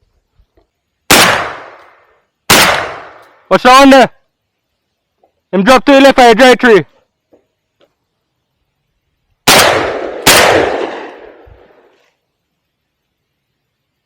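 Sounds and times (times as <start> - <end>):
shotgun shots with echo: 1.1 - 1.8, 2.5 - 3.2, 9.5 - 11.4.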